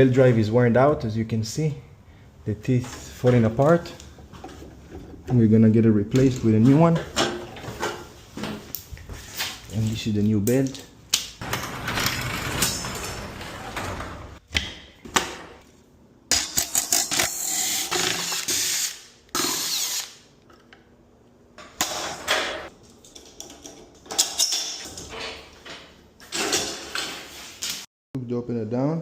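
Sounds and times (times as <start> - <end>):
power drill bursts: 17.3 - 20.1.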